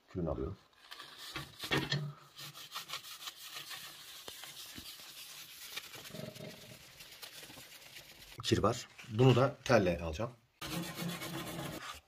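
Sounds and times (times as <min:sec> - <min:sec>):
paper napkin rubbing on glass: 0:02.4 - 0:08.4, 0:10.6 - 0:12.0.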